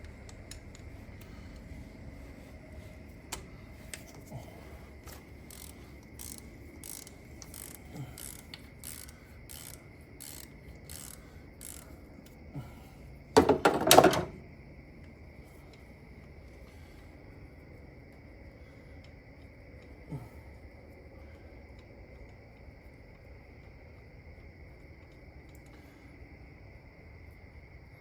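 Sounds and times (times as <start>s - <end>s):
socket ratchet clicking: 5.4s - 11.9s.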